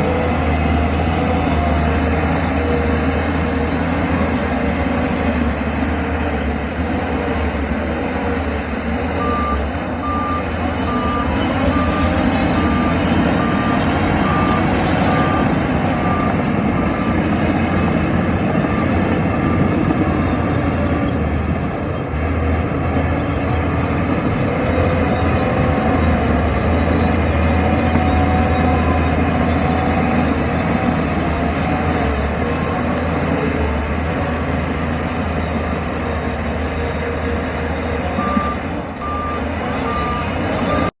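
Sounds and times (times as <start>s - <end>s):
bulldozer diesel engine rumbling: 0.0s - 41.0s
reversing alarm beeping: 9.2s - 22.1s, 38.1s - 40.9s.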